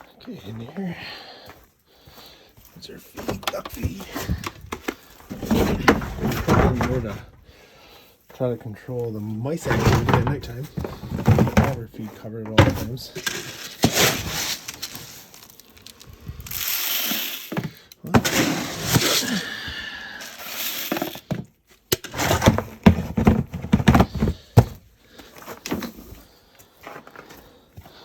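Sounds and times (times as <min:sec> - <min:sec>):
feed bin lid thuds and clatter: 0:05.3 - 0:07.4, 0:09.6 - 0:14.4, 0:22.0 - 0:24.8
dry feed pouring hiss: 0:15.3 - 0:17.5, 0:20.2 - 0:21.2.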